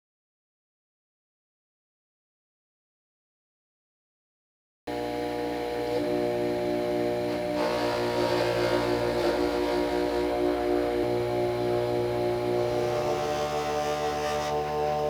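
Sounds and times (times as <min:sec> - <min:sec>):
power tool motor running: 0:04.9 - 0:15.0.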